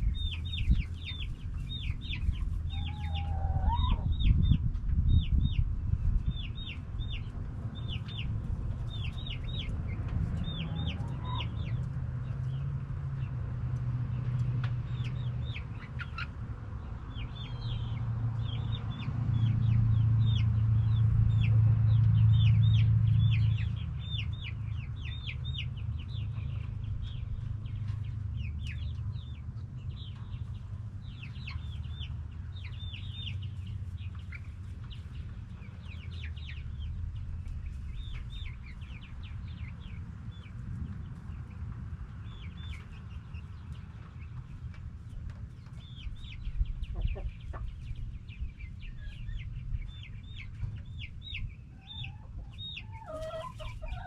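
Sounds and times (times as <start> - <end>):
low rumble: 0.0 - 52.8
chickens clucking: 0.0 - 54.0.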